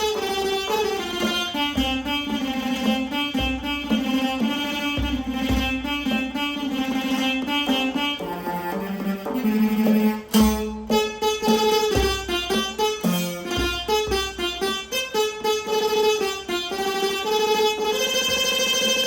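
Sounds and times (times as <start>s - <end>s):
plucked zither melody: 0.0s - 19.0s
low thumps: 1.0s - 6.5s.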